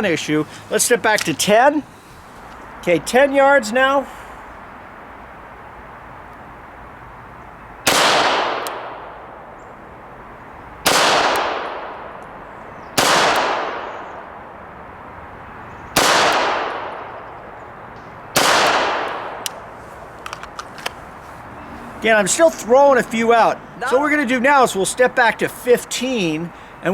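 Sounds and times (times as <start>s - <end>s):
pistol shots echoing: 7.8s - 9.4s, 10.8s - 12.2s, 13.0s - 14.4s, 16.0s - 17.3s, 18.3s - 19.5s.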